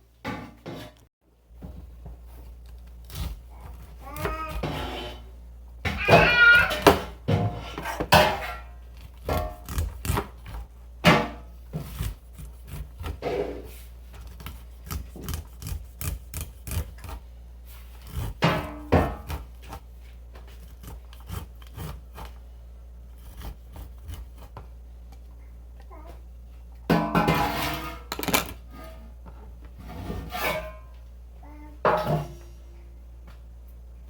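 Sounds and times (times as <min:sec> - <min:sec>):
knife scraping corn cobs: 0:02.6 - 0:05.3, 0:07.6 - 0:10.7, 0:11.7 - 0:22.4, 0:23.1 - 0:24.6.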